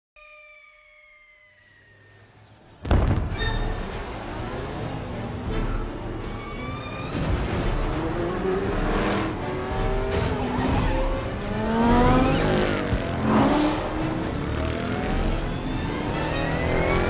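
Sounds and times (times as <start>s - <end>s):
racing car engines passing by: 3.7s - 17.0s.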